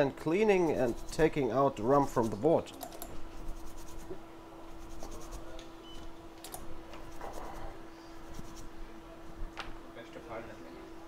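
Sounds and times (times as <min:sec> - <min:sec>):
faint electrical hum: 0:00.0 - 0:11.0
hand tool scratching circuit board: 0:00.7 - 0:04.1, 0:04.8 - 0:05.5, 0:07.0 - 0:07.6, 0:08.2 - 0:08.7.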